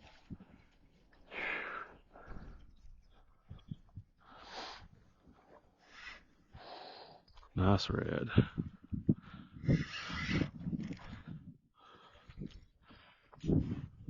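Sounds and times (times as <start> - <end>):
person breathing: 1.3 - 3.6, 4.2 - 7.3, 8.4 - 10.4, 11.0 - 14.0.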